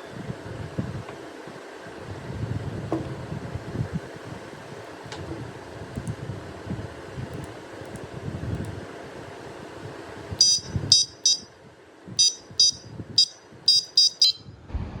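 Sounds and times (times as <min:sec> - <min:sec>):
bicycle horn high-pitched beeps: 0:10.4 - 0:11.5, 0:12.2 - 0:14.6
low rumbling handling noise: 0:14.5 - 0:15.0.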